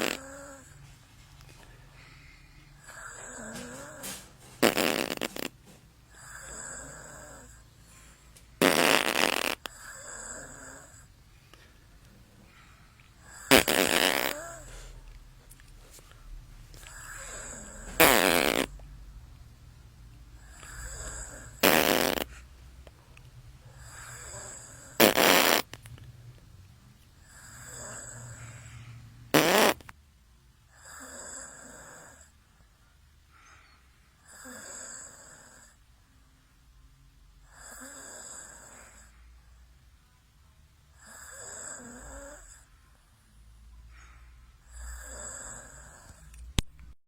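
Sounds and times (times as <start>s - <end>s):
boy snoring: 0.0s - 0.8s, 2.8s - 5.5s, 6.1s - 7.7s, 8.6s - 11.1s, 13.2s - 14.9s, 16.8s - 18.7s, 20.4s - 22.4s, 23.8s - 25.7s, 27.2s - 28.7s, 30.7s - 32.3s, 34.2s - 35.8s, 37.5s - 39.1s, 41.0s - 42.7s, 44.7s - 46.3s
loud rasping snores: 0.0s - 0.8s, 2.8s - 5.5s, 6.1s - 7.6s, 8.6s - 11.1s, 13.2s - 14.7s, 16.9s - 18.7s, 20.4s - 22.4s, 23.8s - 25.7s, 27.2s - 29.8s, 30.7s - 32.3s, 34.2s - 35.8s, 37.5s - 39.1s, 41.0s - 42.7s, 44.6s - 46.3s.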